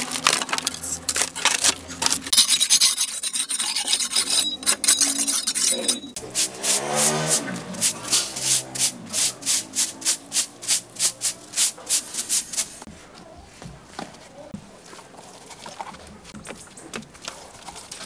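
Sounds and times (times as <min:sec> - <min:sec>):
hand sanding hard surface: 0:02.3 - 0:12.9.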